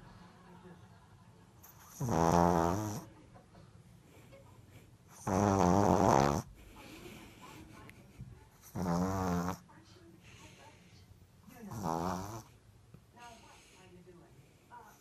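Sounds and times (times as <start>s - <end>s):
dog snoring: 1.6s - 3.1s, 5.1s - 6.5s, 8.6s - 9.7s, 11.6s - 12.6s.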